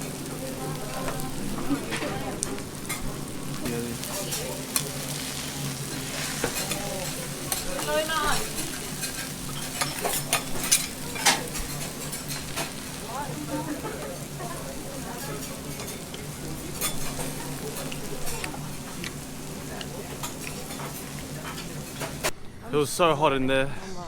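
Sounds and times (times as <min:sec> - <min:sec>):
food sizzling on griddle: 0:00.0 - 0:22.3
metal spatulas clicking and scraping: 0:08.4 - 0:12.8.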